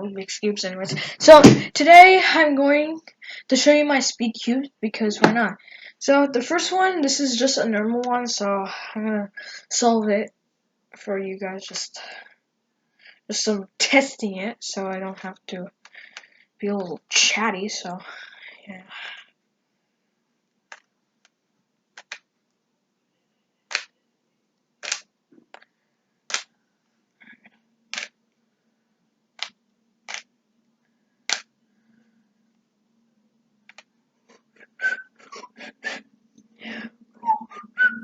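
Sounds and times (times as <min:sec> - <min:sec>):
speed cube clacking: 0:22.0 - 0:22.2, 0:23.7 - 0:23.9, 0:24.8 - 0:25.1, 0:27.9 - 0:28.1, 0:29.4 - 0:30.3, 0:31.3 - 0:31.5.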